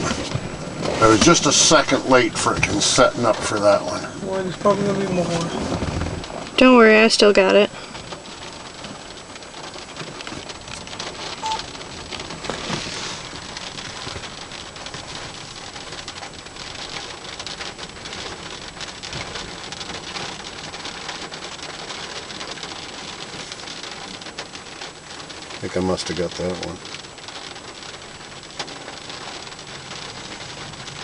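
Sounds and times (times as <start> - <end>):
rain spatters: 0.0 - 31.0
steady rain falling: 0.0 - 31.0.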